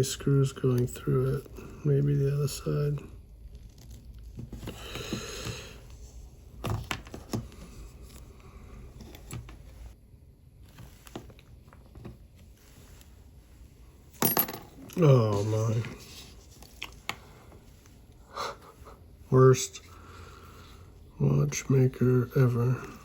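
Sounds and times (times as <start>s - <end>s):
short breath: 4.7s - 5.9s.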